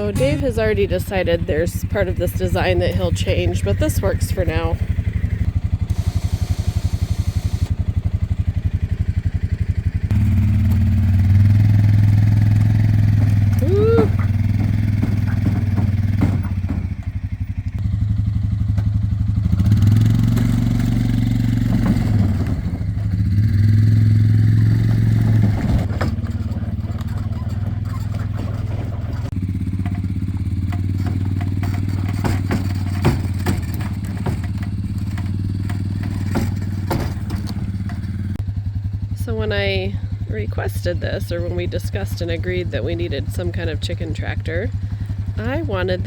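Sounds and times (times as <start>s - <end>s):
small vehicle engine running: 0.0s - 46.0s
frame clattering and knocking: 12.0s - 17.4s, 24.5s - 38.4s.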